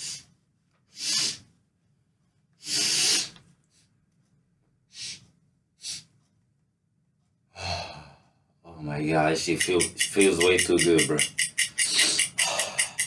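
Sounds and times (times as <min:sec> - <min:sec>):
short sniffs: 0:00.9 - 0:01.5, 0:02.6 - 0:03.4, 0:04.9 - 0:06.2
man snorting through nose: 0:02.6 - 0:03.4.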